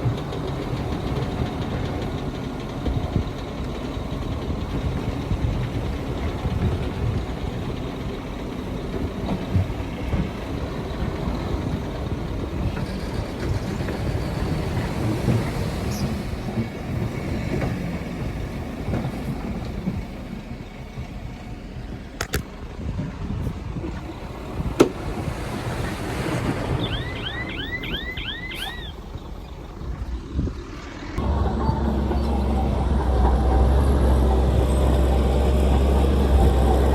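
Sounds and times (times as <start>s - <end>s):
heavy diesel engine rumbling: 0.0s - 36.9s
short high chirps: 26.8s - 29.0s.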